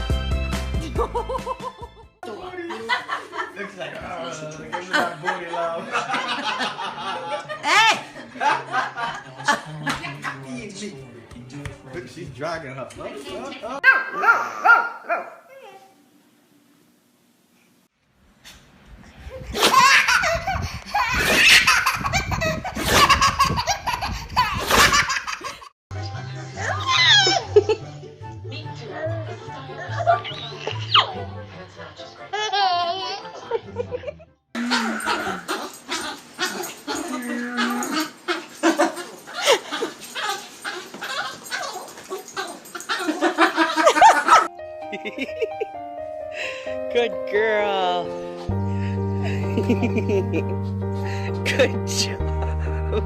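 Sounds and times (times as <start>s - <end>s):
person laughing hard: 0.8s - 2.0s, 33.6s - 35.6s, 43.0s - 45.7s, 49.2s - 50.5s.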